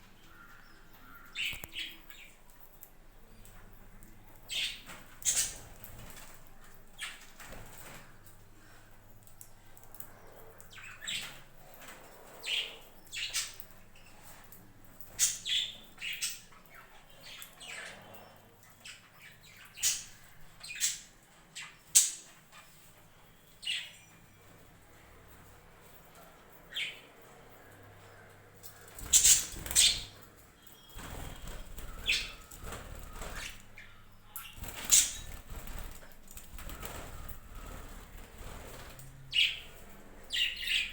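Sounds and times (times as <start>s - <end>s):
budgerigars chirping and squawking: 4.4s - 6.3s, 10.3s - 22.8s, 28.7s - 30.3s, 31.0s - 40.9s.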